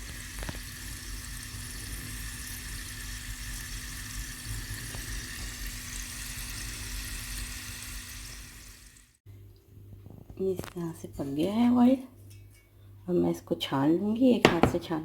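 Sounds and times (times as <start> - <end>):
spices sizzling in oil: 0.0 - 9.1.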